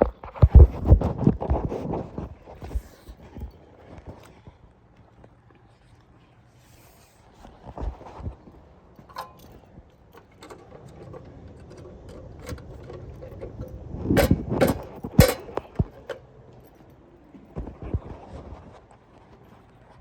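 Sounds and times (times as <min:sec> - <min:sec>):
scattered clicks and knocks: 0:09.0 - 0:16.7
loud clatter: 0:10.2 - 0:16.2.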